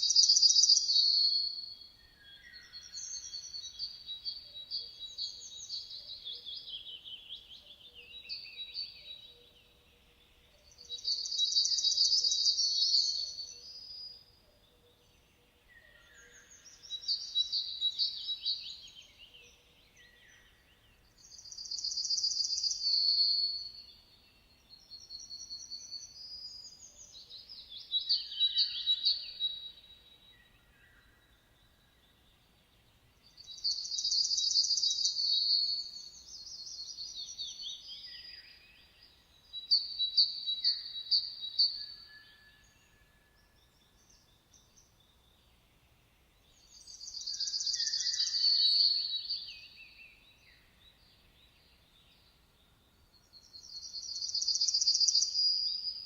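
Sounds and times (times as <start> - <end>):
songbird trills and warbles: 0.0 - 56.0.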